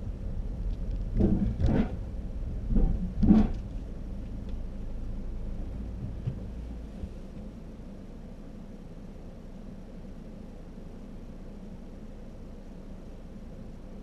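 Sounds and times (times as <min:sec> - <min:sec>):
car rumbling from inside: 0:00.0 - 0:07.9.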